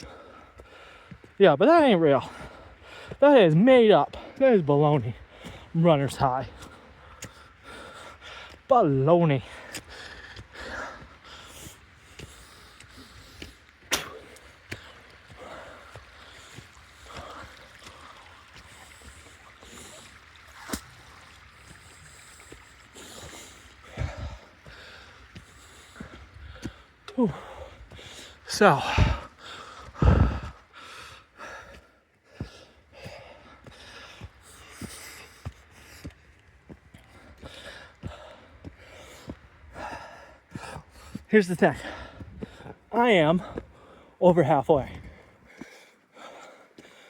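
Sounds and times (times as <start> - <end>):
hiker footsteps on trail: 0.0 - 47.0
heavy breathing: 6.5 - 8.7, 9.4 - 20.1, 22.0 - 36.2, 36.9 - 44.2, 44.9 - 47.0
man panting: 6.5 - 8.7, 9.4 - 18.3, 23.0 - 36.1, 36.9 - 44.2, 44.8 - 47.0.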